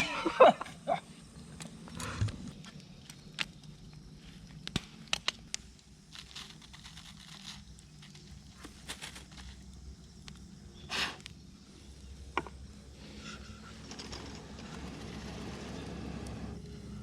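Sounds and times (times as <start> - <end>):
campfire crackling and popping: 2.6 - 11.4.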